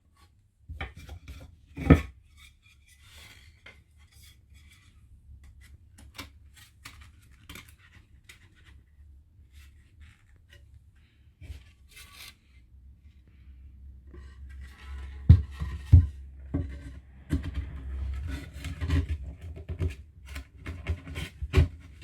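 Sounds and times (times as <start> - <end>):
short wooden scrape: 16.6 - 21.6.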